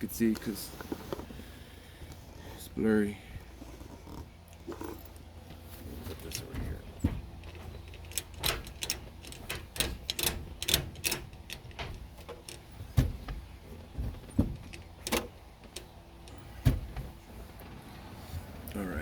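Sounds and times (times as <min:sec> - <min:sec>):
metal parts and tools clicking: 0:06.2 - 0:13.1, 0:14.2 - 0:16.6.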